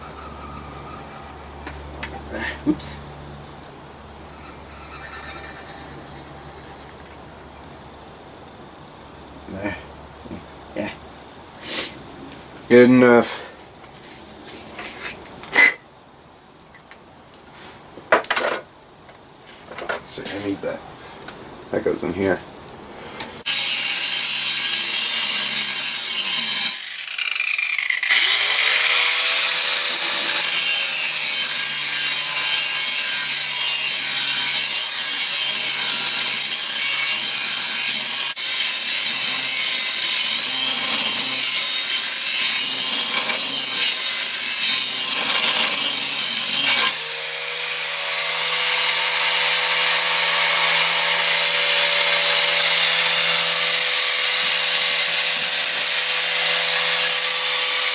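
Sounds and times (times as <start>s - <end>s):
angle grinder disc rasping on steel: 23.4s - 57.9s
grinder motor whine: 23.5s - 57.9s.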